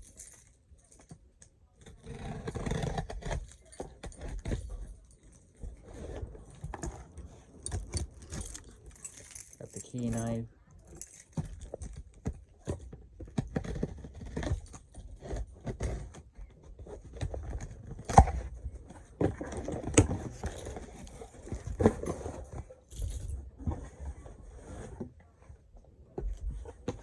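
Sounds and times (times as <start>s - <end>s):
keys jangling: 0.0s - 1.2s, 7.6s - 12.0s, 20.3s - 23.4s.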